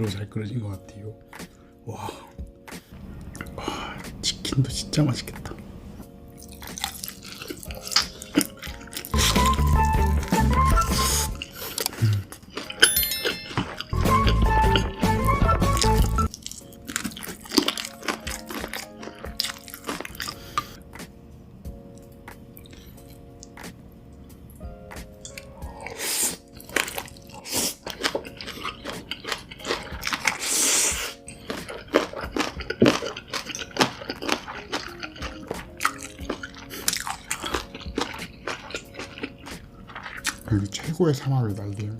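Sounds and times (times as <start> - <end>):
background music: 0.0 - 41.9
crunchy chewing of fried chicken: 6.3 - 10.4, 11.0 - 12.8, 16.2 - 20.8, 25.2 - 41.8.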